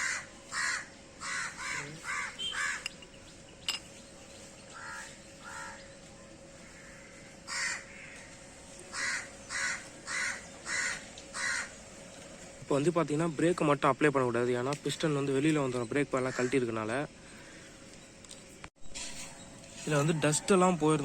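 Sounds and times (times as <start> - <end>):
crow cawing: 0.0 - 2.9, 4.7 - 5.9, 6.6 - 11.8.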